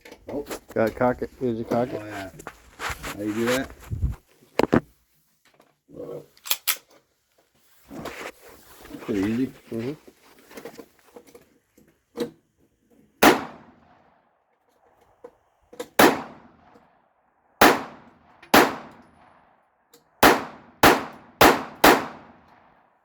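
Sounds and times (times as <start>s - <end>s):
handgun shots: 13.2s - 13.8s, 16.0s - 16.6s, 17.6s - 19.2s, 20.2s - 22.6s.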